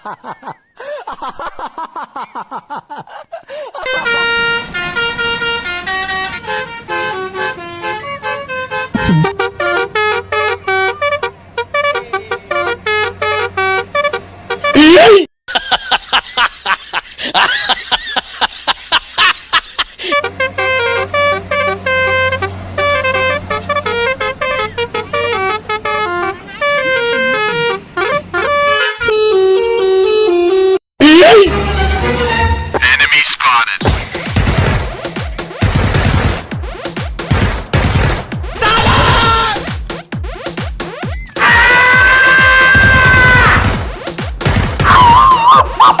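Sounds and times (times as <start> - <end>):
musical bus horn playing a tune: 3.8 - 15.2, 20.0 - 32.8, 38.6 - 39.7.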